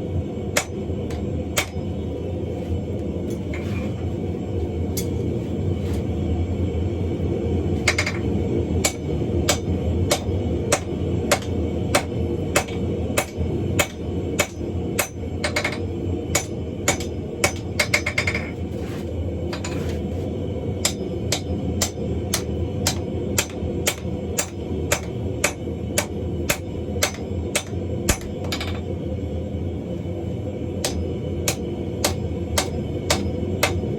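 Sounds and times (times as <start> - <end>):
hammer ringing on anvil: 1.6 - 1.8, 8.8 - 18.5, 20.8 - 28.8, 30.8 - 33.8.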